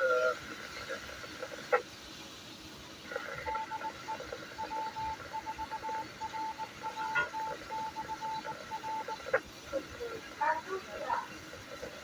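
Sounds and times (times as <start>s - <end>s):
faint radio static: 0.0s - 2.0s, 3.0s - 12.0s
morse code beeps: 3.5s - 9.3s.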